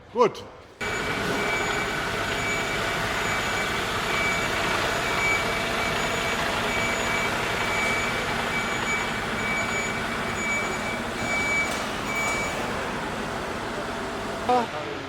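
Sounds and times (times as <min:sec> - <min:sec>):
electronic warning beeper: 0:00.8 - 0:12.7
factory machinery noise: 0:00.8 - 0:15.0.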